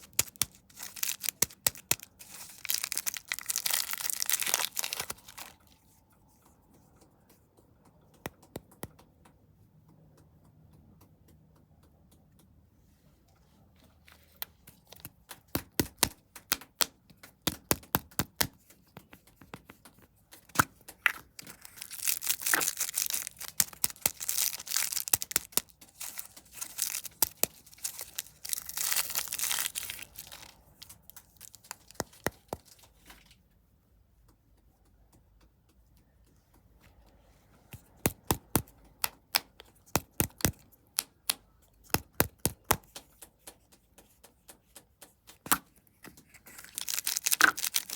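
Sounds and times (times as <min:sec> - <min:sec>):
plastic wrapper tearing and crinkling: 0:00.0 - 0:05.8, 0:20.5 - 0:32.9, 0:46.2 - 0:47.9
packaging clicks and taps: 0:00.0 - 0:05.9, 0:13.8 - 0:33.2, 0:37.7 - 0:47.9.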